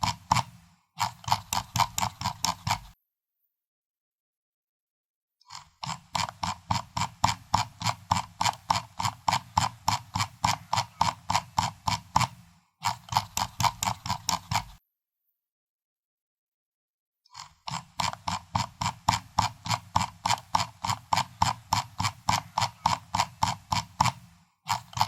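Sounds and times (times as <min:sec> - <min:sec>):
mouse scroll wheel clicking: 0:00.0 - 0:03.0, 0:05.5 - 0:14.8, 0:17.3 - 0:25.0.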